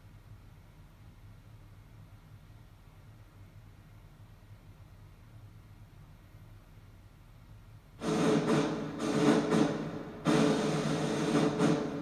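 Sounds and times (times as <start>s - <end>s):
tape hum and hiss: 0.0s - 12.0s.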